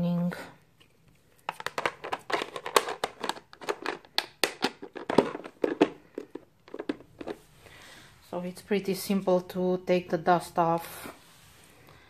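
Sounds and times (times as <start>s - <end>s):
plastic parts clicking and rattling: 1.4s - 7.4s.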